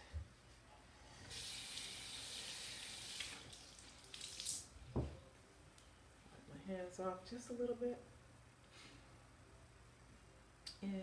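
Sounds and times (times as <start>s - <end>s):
tap water running: 1.2s - 4.7s.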